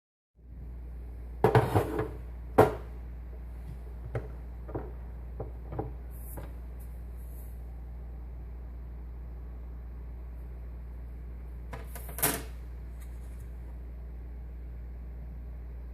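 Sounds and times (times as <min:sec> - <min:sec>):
steady low hum: 0:00.4 - 0:15.9
kitchen items clattering: 0:01.4 - 0:02.9.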